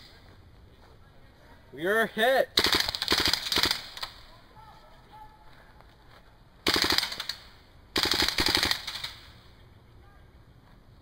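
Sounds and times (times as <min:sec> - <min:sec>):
airsoft gun rapid bursts: 0:02.6 - 0:04.1, 0:06.6 - 0:07.4, 0:08.0 - 0:09.2.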